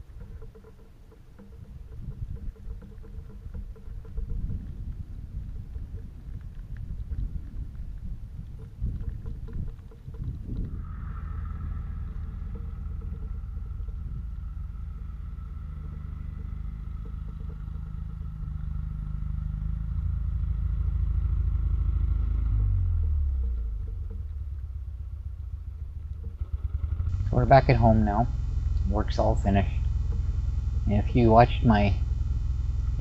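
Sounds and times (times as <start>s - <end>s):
vehicle motor whine: 10.6s - 33.0s.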